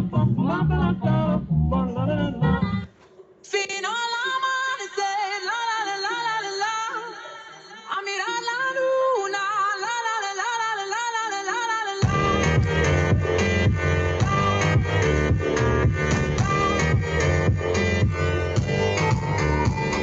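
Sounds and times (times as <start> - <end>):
bass-heavy music track: 0.0 - 2.9, 12.0 - 20.0
slowed wavering sung vocal: 0.0 - 2.9.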